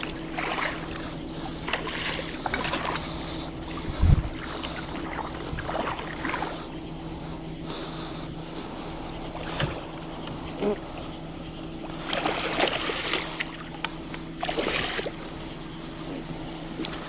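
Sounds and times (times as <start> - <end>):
fish thrashing and splashing: 0.0 - 6.6, 12.0 - 15.5
steady low hum: 0.0 - 17.0.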